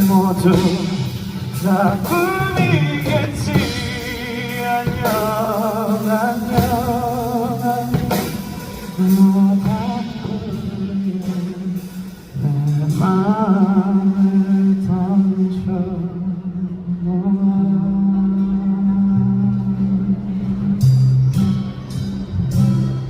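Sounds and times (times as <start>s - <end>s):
man singing with vibrato: 0.0s - 21.4s
guitar: 0.0s - 23.0s
low accompaniment: 0.0s - 23.0s.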